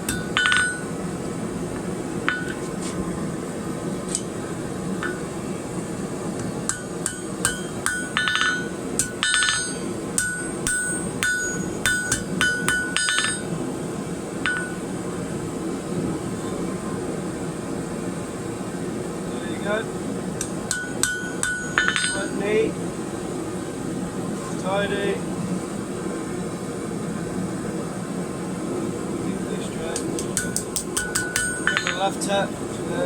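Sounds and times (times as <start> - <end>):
hammer tapping steel on anvil: 0.0 - 1.0, 1.8 - 2.8, 5.0 - 5.3, 6.4 - 13.5, 14.4 - 14.8, 20.4 - 22.4, 30.0 - 32.1
steady low hum: 0.0 - 33.0.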